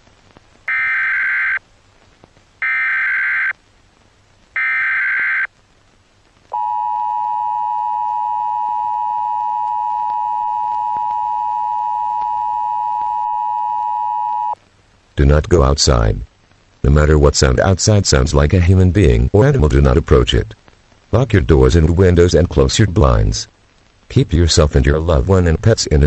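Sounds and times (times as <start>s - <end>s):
buzzy digital data bursts: 0.7s - 1.6s, 2.6s - 3.6s, 4.6s - 5.5s
two-tone attention signal: 6.6s - 14.6s.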